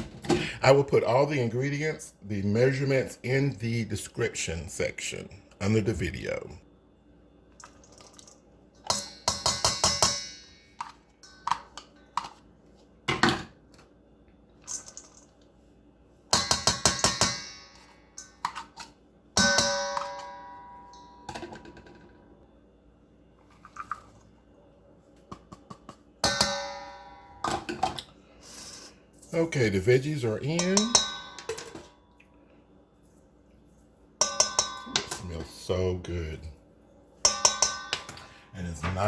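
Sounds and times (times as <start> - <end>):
bowl ringing: 19.4 - 21.4, 26.2 - 27.5, 30.4 - 31.8, 34.2 - 35.3
bowls knocking: 34.2 - 35.5, 37.3 - 38.3.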